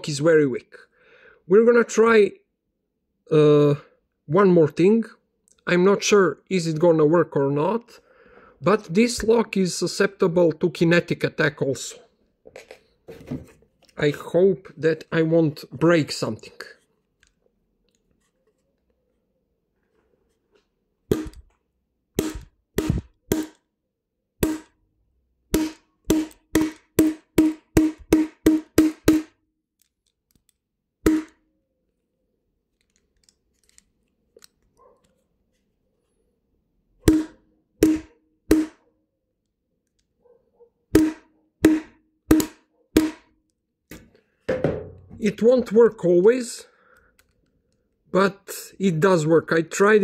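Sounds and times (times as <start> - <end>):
padlock being struck with ringing knocks: 21.1 - 21.5, 22.2 - 23.6, 24.4 - 24.8, 25.5 - 29.5, 31.0 - 31.5, 37.1 - 38.8, 40.9 - 43.4.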